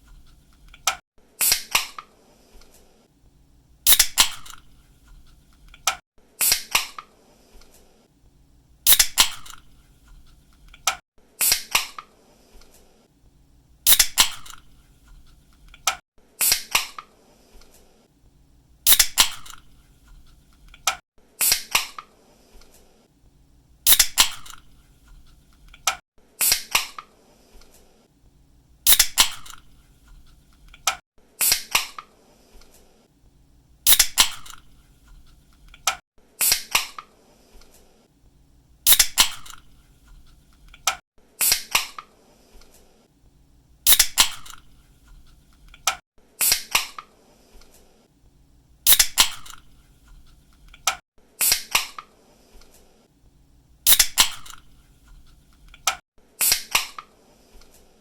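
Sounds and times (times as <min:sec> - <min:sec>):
drink can opening with fizz: 0:03.9 - 0:04.6, 0:08.9 - 0:09.6, 0:13.9 - 0:14.6, 0:18.9 - 0:19.6, 0:23.9 - 0:24.6, 0:28.9 - 0:29.6, 0:33.9 - 0:34.6, 0:38.9 - 0:39.6, 0:43.9 - 0:44.6, 0:48.9 - 0:49.6, 0:53.9 - 0:54.6.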